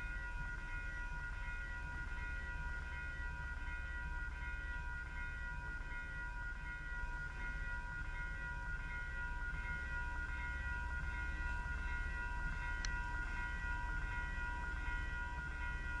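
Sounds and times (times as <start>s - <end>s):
train rumbling past: 7.1s - 16.0s.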